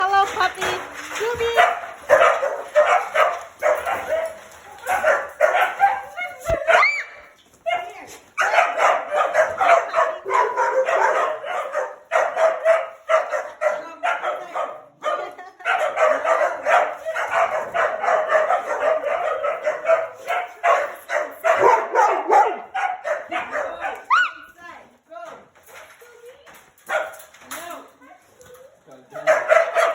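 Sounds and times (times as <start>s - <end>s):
dogs barking: 0.6s - 24.4s, 26.9s - 27.3s, 29.1s - 29.9s
high rising dog yip: 4.9s - 7.3s, 15.8s - 24.4s.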